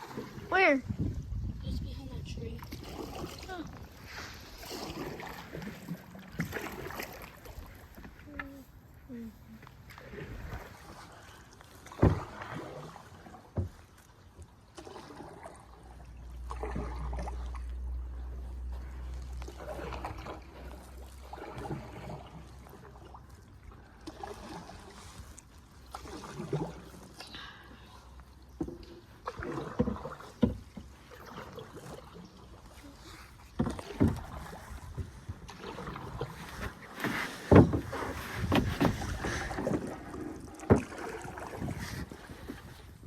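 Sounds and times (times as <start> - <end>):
paddles splashing in water: 0.0 - 43.0
wind rumble on microphone: 0.4 - 4.6, 37.5 - 40.0, 41.4 - 43.0
paddle knocking against hull: 11.8 - 14.0, 28.6 - 32.5, 33.4 - 42.9.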